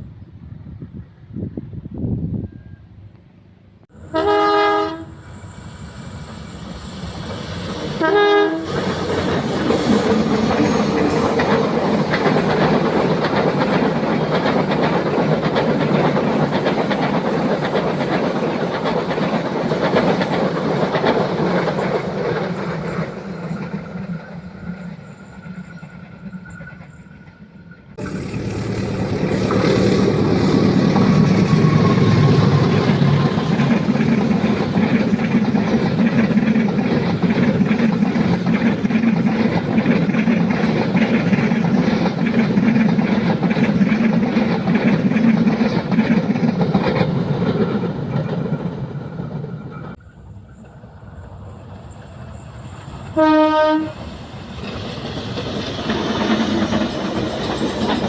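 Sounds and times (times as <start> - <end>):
train passing with rumble: 0.0 - 58.0
train horn: 4.0 - 5.2, 8.0 - 8.8, 53.1 - 54.1
wheels clattering over rail joints: 8.7 - 50.0.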